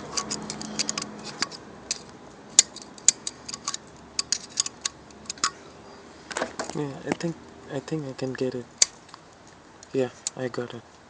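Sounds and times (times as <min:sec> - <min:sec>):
screwdriver clicking on metal parts: 0:00.0 - 0:05.6.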